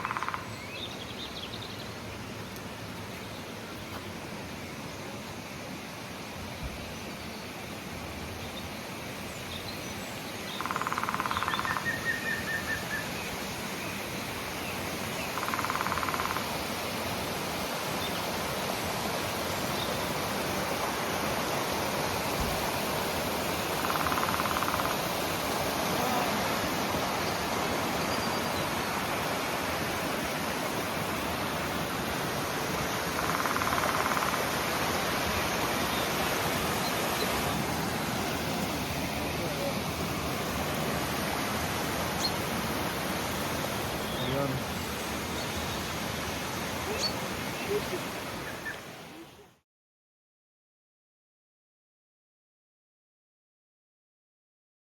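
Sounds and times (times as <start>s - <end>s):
bird chirps: 10.5s - 13.1s
waterfall rushing: 11.0s - 49.4s.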